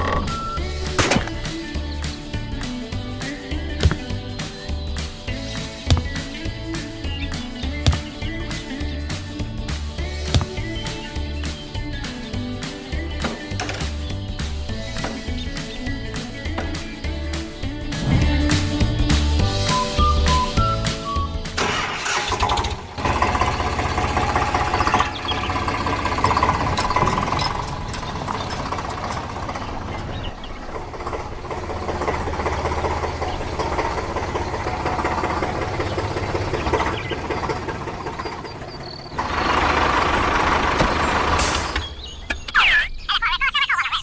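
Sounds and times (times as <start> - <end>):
model vehicle motor running: 21.6 - 41.9.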